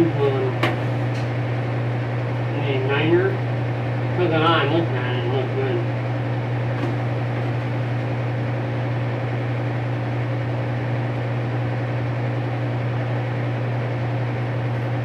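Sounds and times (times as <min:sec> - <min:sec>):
furnace motor hum: 0:00.0 - 0:15.0.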